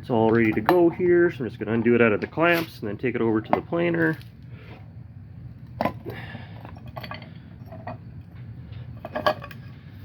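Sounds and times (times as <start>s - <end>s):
metal clamps clinking: 5.8s - 8.0s, 9.0s - 9.7s.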